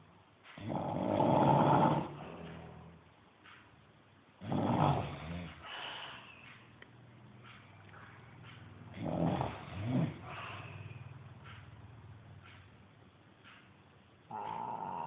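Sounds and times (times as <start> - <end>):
person snoring: 0.6 - 2.9, 4.4 - 5.6, 9.0 - 10.6.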